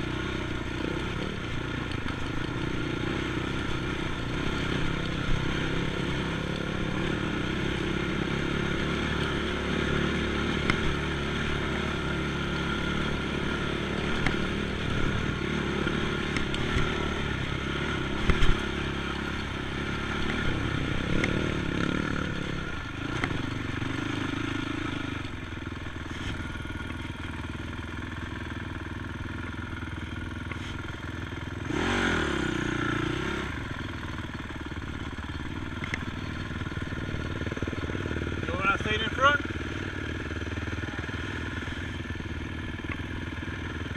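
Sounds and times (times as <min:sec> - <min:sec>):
atv engine running: 0:00.0 - 0:43.9.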